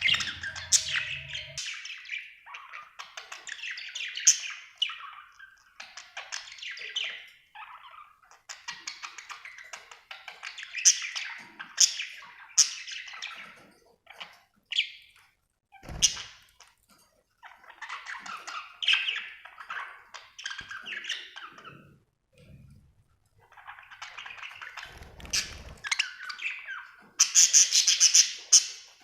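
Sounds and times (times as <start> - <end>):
budgerigar chirping and chattering: 0.0 - 13.5.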